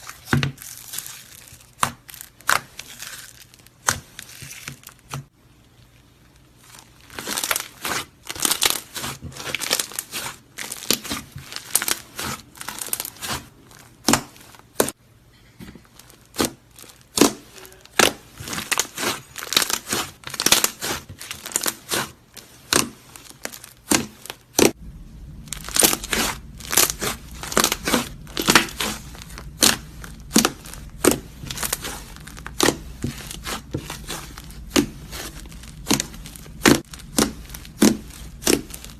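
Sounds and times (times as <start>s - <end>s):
low steady hum: 0.0s - 38.9s
slime crackling pops: 25.5s - 38.9s.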